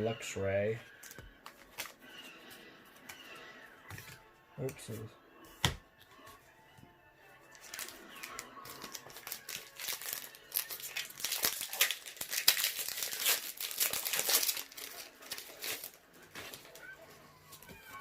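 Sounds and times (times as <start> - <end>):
wrapper crinkling: 7.5 - 18.0.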